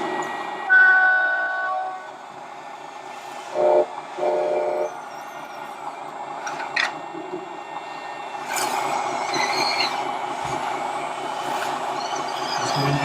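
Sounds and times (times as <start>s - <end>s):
steady mechanical hum: 2.0s - 13.0s
model truck air horn blast: 3.4s - 4.9s.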